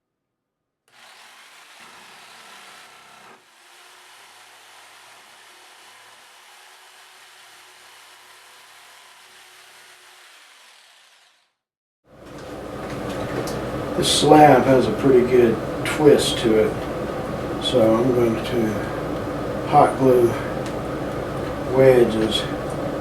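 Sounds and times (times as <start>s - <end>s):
power tool cutting wood: 0.9s - 11.6s.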